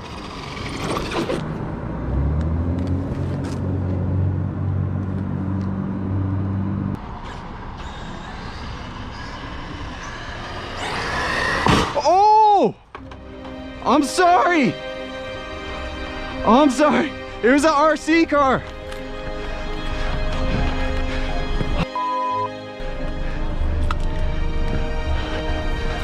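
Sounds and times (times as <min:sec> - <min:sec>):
road noise: 0:00.0 - 0:12.0, 0:12.6 - 0:26.0
car engine humming: 0:13.0 - 0:26.0.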